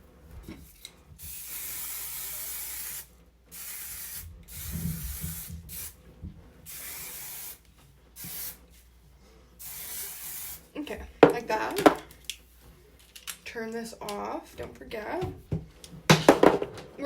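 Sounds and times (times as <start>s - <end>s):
aerosol can spraying: 1.2s - 6.0s, 6.7s - 8.6s, 9.6s - 12.0s.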